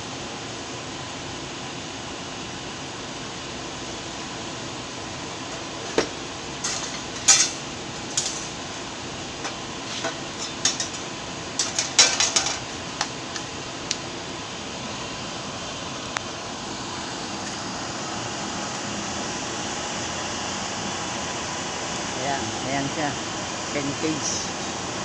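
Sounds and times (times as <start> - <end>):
metal parts clanking: 6.6 - 8.5.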